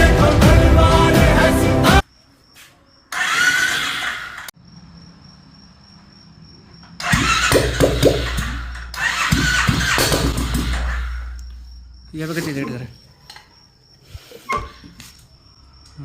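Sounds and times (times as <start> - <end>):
burst of mechanical noise: 7.0 - 11.4
motorcycle engine running: 7.1 - 11.7.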